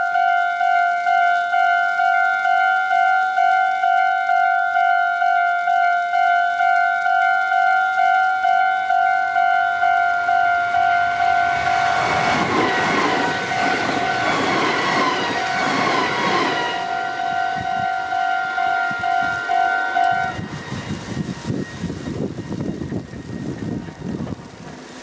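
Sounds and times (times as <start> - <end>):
two-tone crossing alarm dings: 0.0 - 20.5
electric train rumble: 0.0 - 25.0
whine gliding down in pitch: 9.4 - 22.7.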